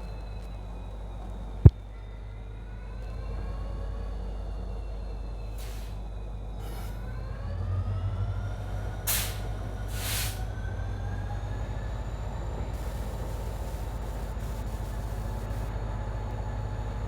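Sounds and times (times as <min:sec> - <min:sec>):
locomotive diesel engine accelerating: 0:00.0 - 0:17.0
short hisses: 0:09.1 - 0:10.4.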